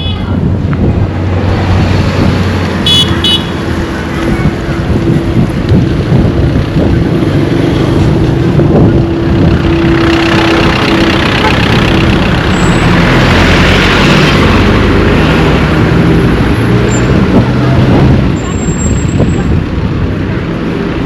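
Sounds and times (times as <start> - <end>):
road traffic rumbling: 0.0 - 21.0
steady engine hum: 0.0 - 21.0
vehicle horn beeps: 2.9 - 3.5.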